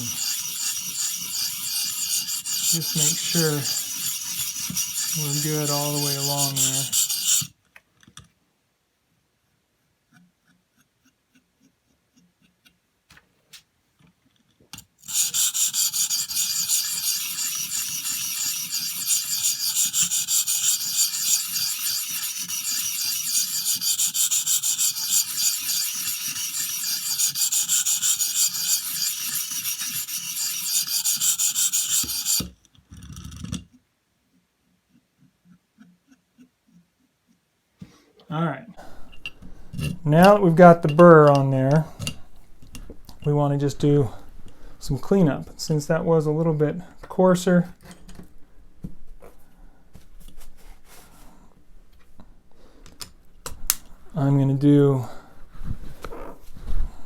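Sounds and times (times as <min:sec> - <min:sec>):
knife scraping on sharpening stone: 0:00.0 - 0:07.5, 0:15.0 - 0:32.5, 0:39.1 - 0:41.4.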